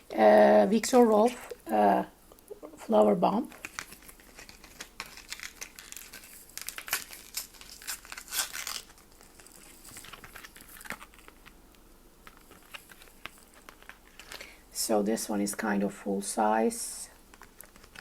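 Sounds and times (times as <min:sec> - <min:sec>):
packaging crinkling and rustling: 0:03.4 - 0:14.7, 0:17.1 - 0:18.0.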